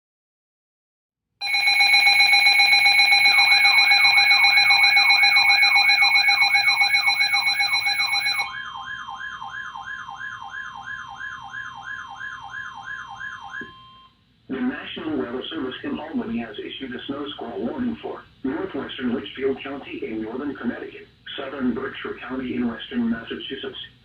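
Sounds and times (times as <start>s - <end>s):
electronic alert tones: 1.4s - 9.3s
low steady tone: 1.4s - 10.0s.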